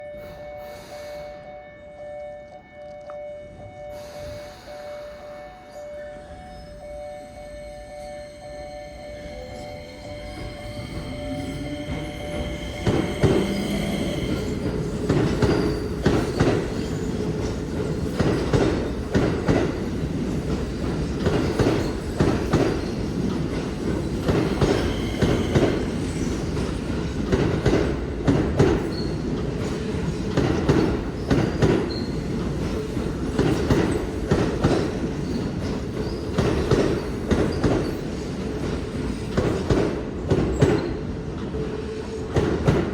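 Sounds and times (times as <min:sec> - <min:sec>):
train rumble: 0:04.0 - 0:42.9
wheels clacking over rail joints: 0:10.0 - 0:40.9.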